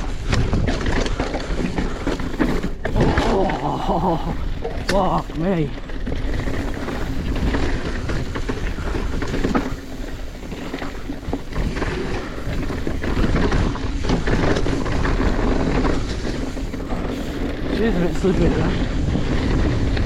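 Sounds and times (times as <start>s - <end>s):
mountain bike rattling over dirt: 0.0s - 20.0s
wind on microphone: 6.0s - 20.0s.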